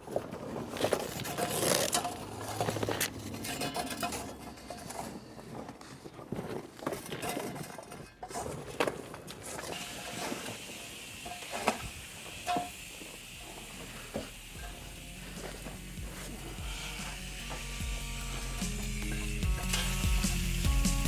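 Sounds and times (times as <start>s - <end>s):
shovels scraping soil: 0.4s - 21.0s
background music: 14.3s - 21.0s.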